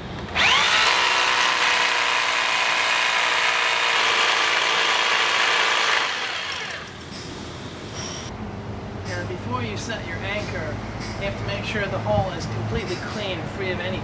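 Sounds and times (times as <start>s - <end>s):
rotary hammer drilling concrete: 0.4s - 7.0s.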